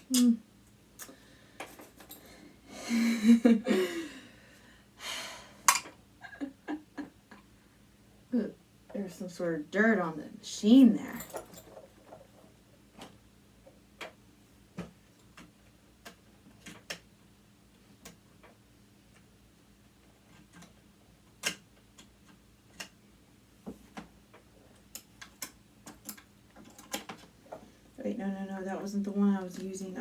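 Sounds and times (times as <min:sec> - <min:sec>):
faint steady hum: 0:00.0 - 0:30.0
metal tools clicking and tapping: 0:05.7 - 0:06.0.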